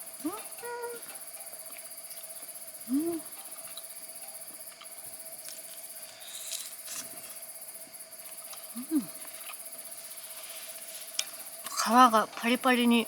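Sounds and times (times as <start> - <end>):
crickets chirring: 0.0 - 13.0
person humming: 2.9 - 3.3, 8.8 - 9.2.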